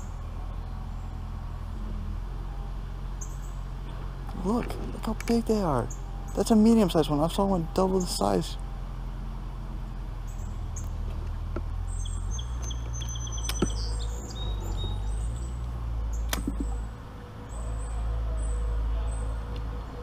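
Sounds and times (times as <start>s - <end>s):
small birds chirping: 3.0s - 8.8s, 9.4s - 19.7s
sharp clicks: 12.5s - 13.9s, 15.6s - 16.8s.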